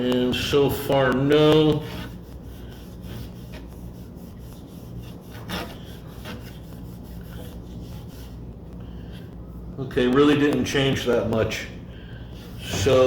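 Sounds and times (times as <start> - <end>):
cloth rubbing on frame: 0.8 - 9.4.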